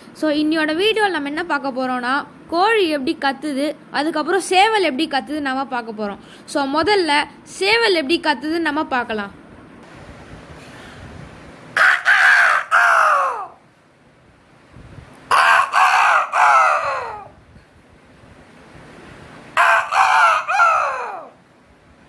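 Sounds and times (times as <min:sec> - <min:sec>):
person imitating rooster crow: 0:11.8 - 0:13.6, 0:15.3 - 0:17.4, 0:19.6 - 0:21.4.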